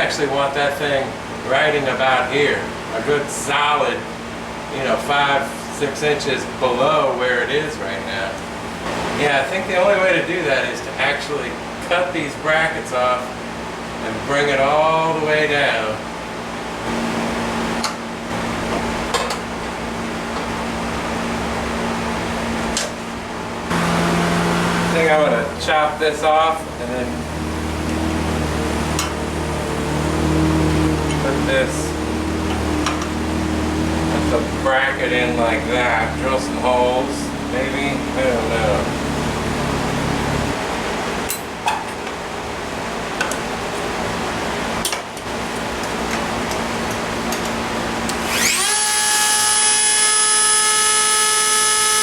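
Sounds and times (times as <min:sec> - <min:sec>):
air conditioner running: 0:00.0 - 0:52.0
low hum: 0:23.6 - 0:41.0.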